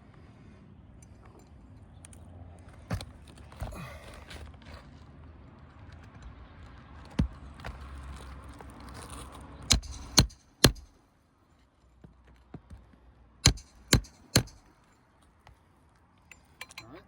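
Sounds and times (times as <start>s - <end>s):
hammer striking shingle roof: 9.7s - 11.0s, 13.4s - 14.8s.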